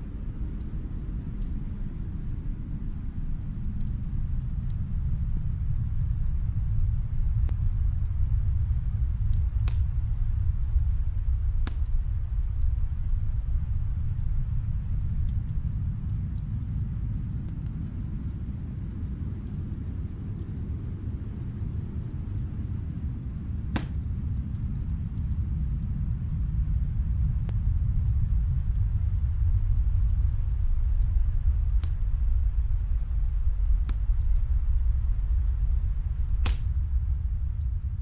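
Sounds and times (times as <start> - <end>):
steady low rumble: 0.0 - 38.0
wood fire crackling: 0.0 - 38.0
sharp fire pop: 23.7 - 24.0, 36.4 - 36.7.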